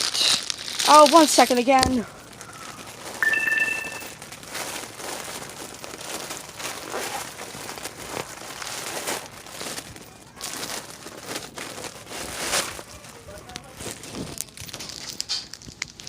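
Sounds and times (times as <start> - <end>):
toy packaging crinkling: 0.0 - 16.0
short electronic beep: 3.2 - 4.2.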